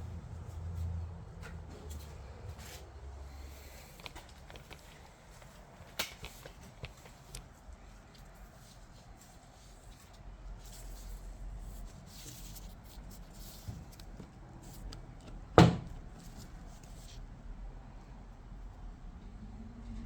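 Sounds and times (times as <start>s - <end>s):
light clicks of parts handled: 3.5s - 8.3s.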